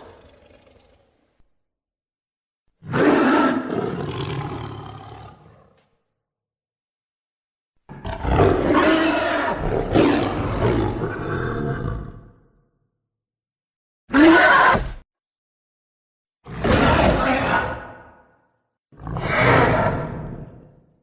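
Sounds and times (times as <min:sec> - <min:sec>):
animal roar: 0:00.0 - 0:01.2, 0:02.8 - 0:05.8, 0:07.9 - 0:12.5, 0:14.1 - 0:15.0, 0:16.5 - 0:18.2, 0:19.0 - 0:20.8.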